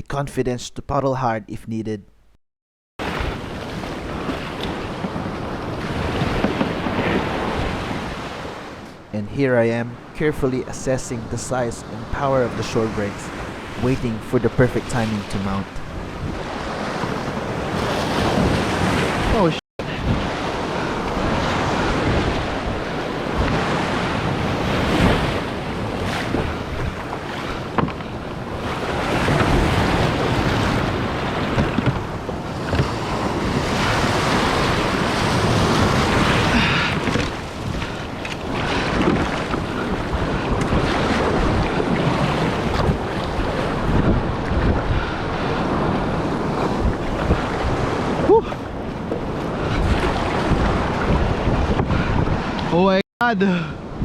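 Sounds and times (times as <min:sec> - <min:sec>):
surf crashing: 0:11.2 - 0:54.0
wind buffeting microphone: 0:15.6 - 0:52.8, 0:53.8 - 0:54.0.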